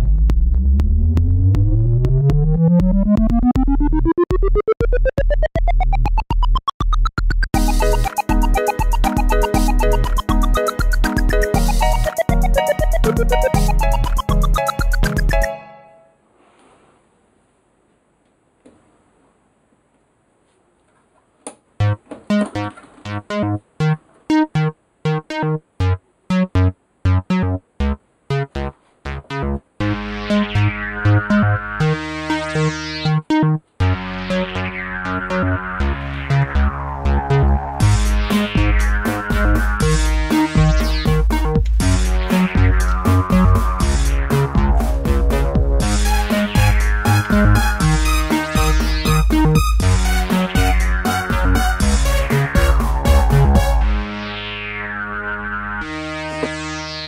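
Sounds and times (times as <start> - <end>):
electronic music with chords: 0.0 - 16.1, 21.8 - 57.0
rising synthesizer tone: 0.6 - 6.8, 7.4 - 15.6, 29.9 - 57.0.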